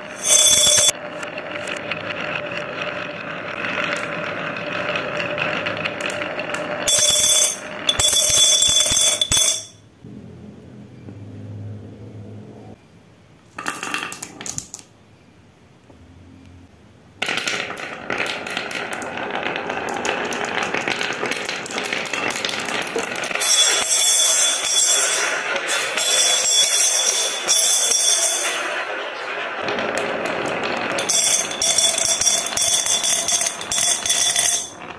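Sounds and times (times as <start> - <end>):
marbles clattering down a run: 0.1 - 9.8, 17.2 - 34.9.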